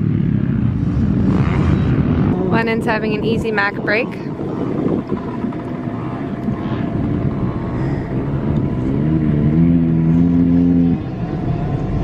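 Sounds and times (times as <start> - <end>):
dirt bike engines rumbling: 0.0 - 12.0
nearby engine drone rising: 0.0 - 12.0.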